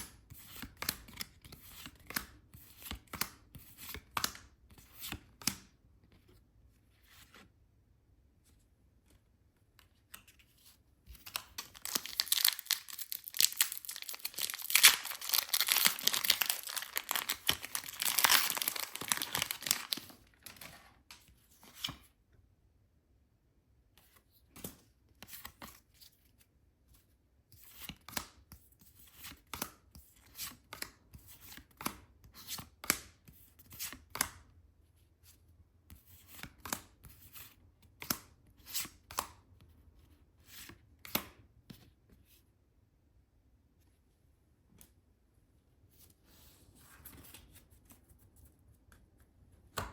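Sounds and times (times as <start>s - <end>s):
crisp snaps and rustles: 11.2s - 21.2s
plastic packaging tearing: 11.4s - 20.2s.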